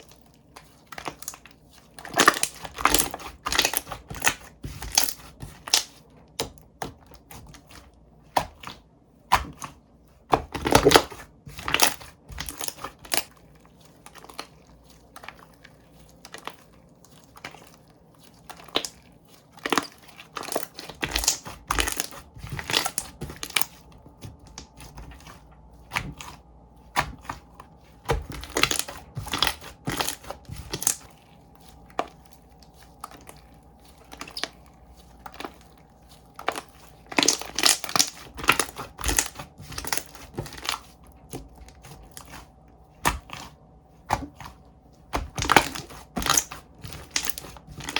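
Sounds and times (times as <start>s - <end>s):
slime clicking and popping: 45.1s - 47.9s.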